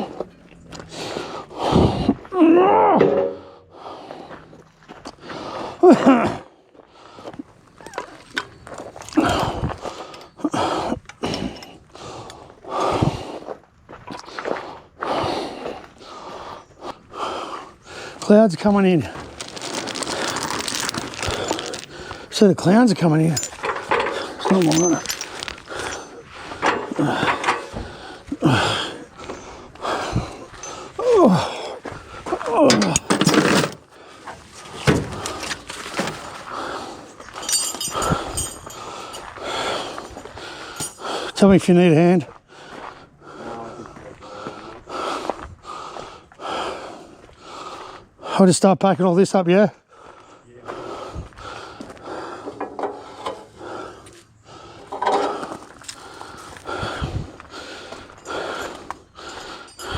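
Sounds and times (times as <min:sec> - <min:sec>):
person breathing heavily: 0:00.0 - 0:02.4, 0:03.0 - 0:07.7, 0:09.1 - 0:33.2, 0:33.8 - 0:41.4, 0:42.3 - 0:48.4, 0:49.8 - 0:59.9
light metallic rattle: 0:22.9 - 0:27.8, 0:37.4 - 0:39.3.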